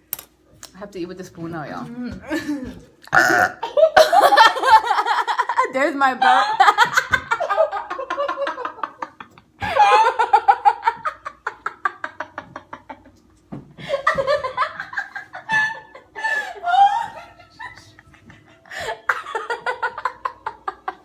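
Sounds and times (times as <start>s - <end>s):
sudden burp: 3.0s - 3.6s
women laughing hard: 3.6s - 21.0s.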